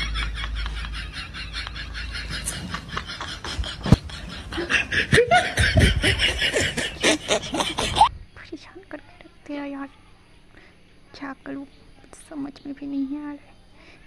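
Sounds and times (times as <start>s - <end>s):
laughter in quick pulses: 0.0s - 8.1s.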